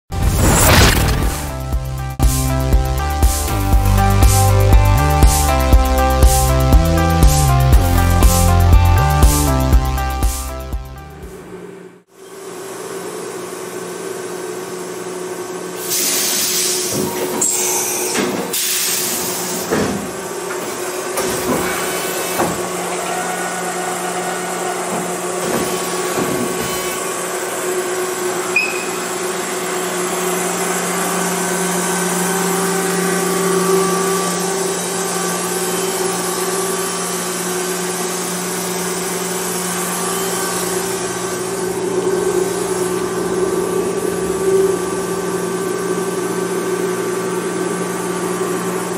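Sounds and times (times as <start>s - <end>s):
machine motors humming: 14.4s - 48.9s.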